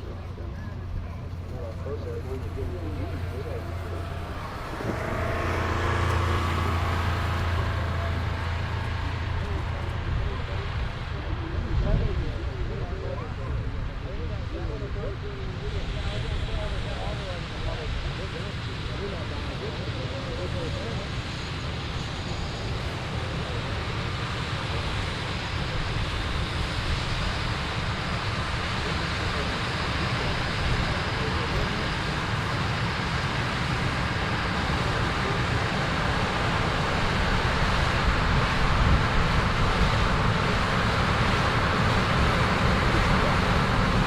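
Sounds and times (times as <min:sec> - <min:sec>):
harvesting machinery running: 0:00.0 - 0:14.2, 0:28.8 - 0:44.0.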